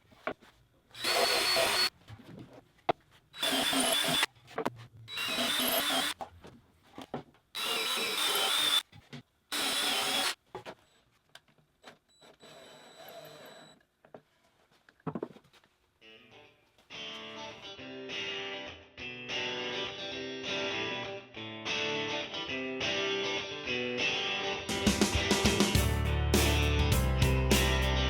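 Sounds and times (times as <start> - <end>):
cordless drill drilling: 1.0 - 1.9, 3.4 - 4.3, 5.1 - 6.2, 7.6 - 8.8, 9.5 - 10.4, 12.2 - 13.8.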